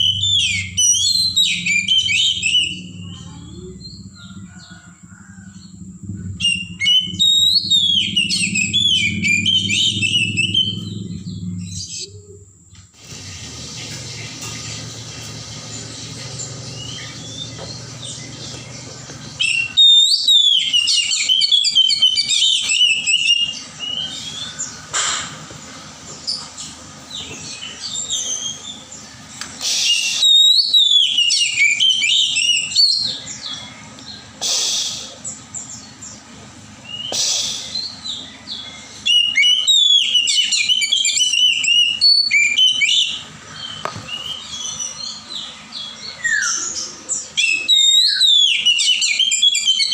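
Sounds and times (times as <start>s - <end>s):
bird singing whistled phrases: 0.0s - 4.1s, 6.3s - 12.4s, 19.4s - 24.7s, 29.6s - 33.7s, 36.9s - 43.2s, 46.0s - 49.9s.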